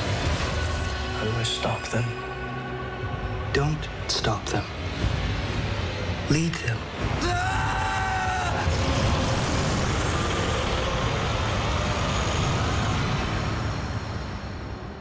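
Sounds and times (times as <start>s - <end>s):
loud rushing noise: 4.7s - 15.0s.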